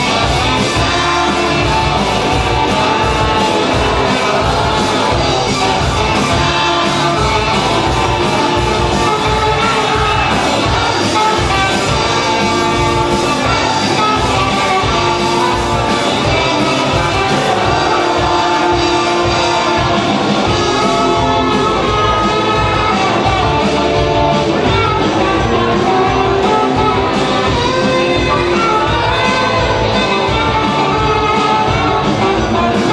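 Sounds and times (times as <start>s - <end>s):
live rock band playing: 0.0s - 32.9s.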